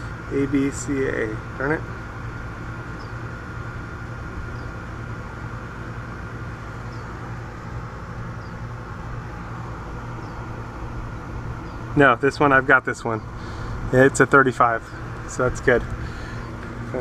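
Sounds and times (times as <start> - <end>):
low mechanical hum: 0.0 - 17.0.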